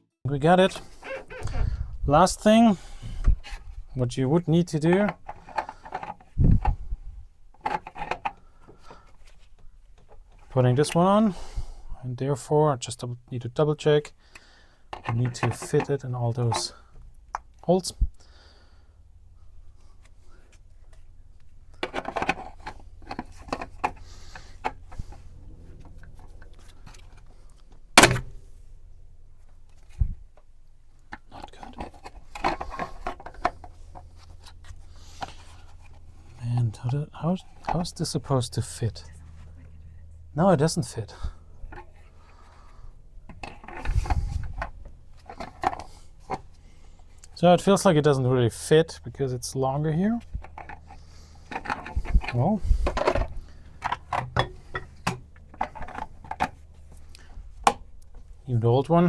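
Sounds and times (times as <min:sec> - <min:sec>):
plastic parts clicking: 0:21.7 - 0:25.2
plastic scraping: 0:31.1 - 0:36.8.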